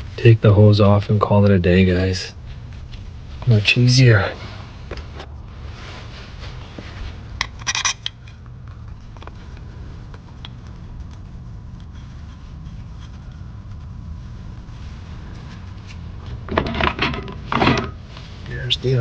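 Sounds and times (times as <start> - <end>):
steady low hum: 0.0 - 19.0
metal tools clinking: 7.4 - 8.2.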